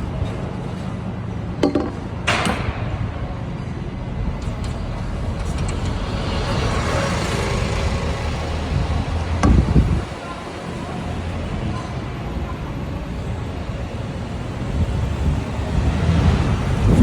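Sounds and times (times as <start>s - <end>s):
low engine rumble: 0.0s - 17.0s
sharp knocks: 1.6s - 3.0s, 9.4s - 10.0s
vehicle passing: 5.0s - 11.4s, 14.6s - 17.0s.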